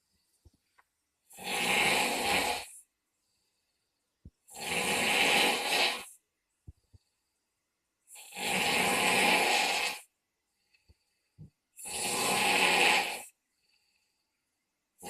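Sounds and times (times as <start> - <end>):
loud snoring: 1.3 - 2.9, 4.4 - 6.2, 8.1 - 10.1, 11.8 - 13.4.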